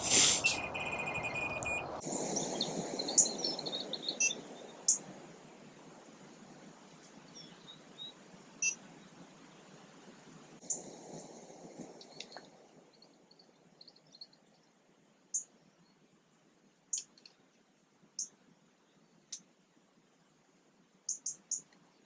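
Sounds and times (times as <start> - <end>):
faint high pulsing tone: 0.0 - 5.7
small birds chirping: 0.0 - 20.4, 21.0 - 22.0.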